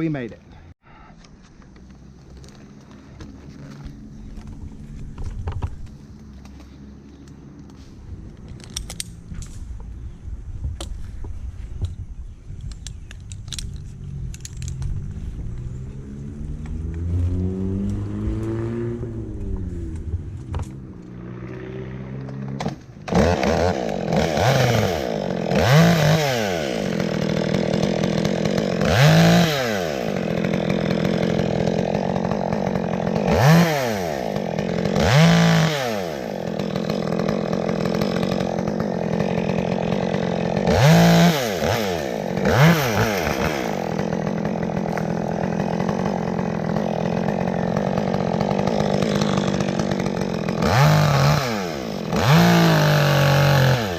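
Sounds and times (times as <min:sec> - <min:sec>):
chainsaw cutting wood: 0:12.7 - 0:53.9.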